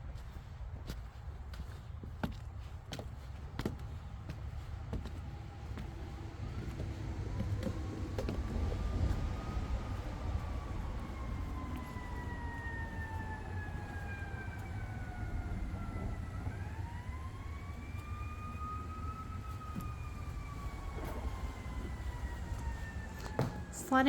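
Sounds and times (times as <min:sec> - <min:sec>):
steady low rumble: 0:00.0 - 0:24.0
emergency siren wailing: 0:05.0 - 0:24.0.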